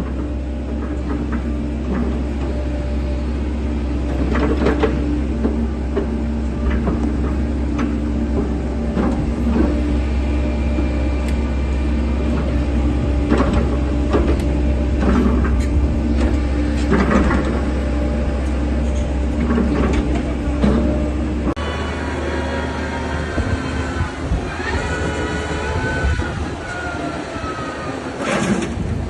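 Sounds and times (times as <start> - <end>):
diesel engine running: 0.0 - 29.0
machine knocks and clanks: 4.0 - 9.9, 12.2 - 17.9, 18.8 - 21.6.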